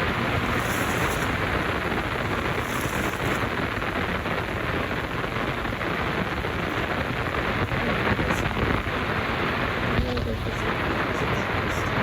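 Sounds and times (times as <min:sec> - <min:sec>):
water pouring into washing machine: 0:00.0 - 0:03.6.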